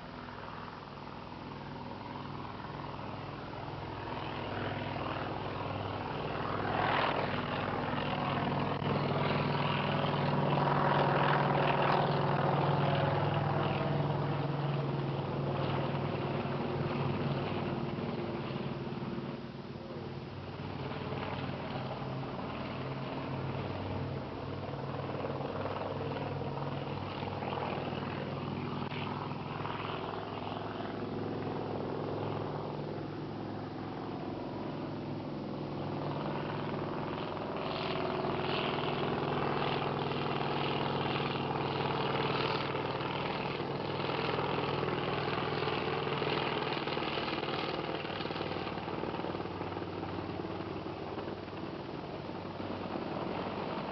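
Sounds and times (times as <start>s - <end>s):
helicopter flying by: 0.0s - 53.9s.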